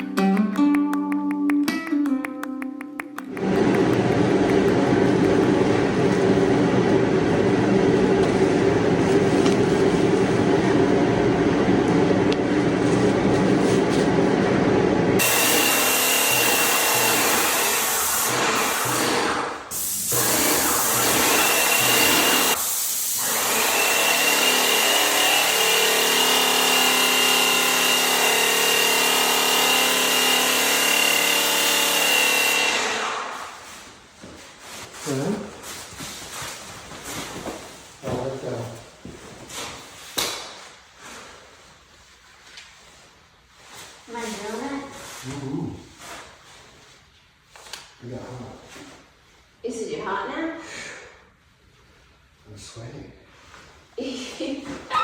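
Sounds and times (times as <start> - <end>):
power tools running: 15.2 - 19.5, 20.1 - 22.6, 23.2 - 33.6.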